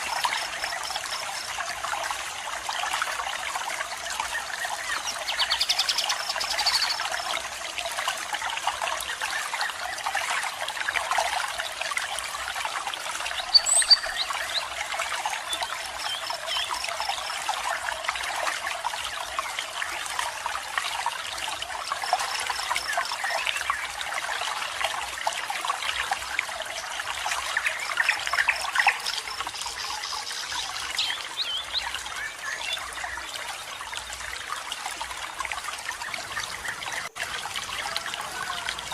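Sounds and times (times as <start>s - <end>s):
small waterfall splashing: 0.0s - 38.9s
high bird chirps: 13.5s - 14.3s.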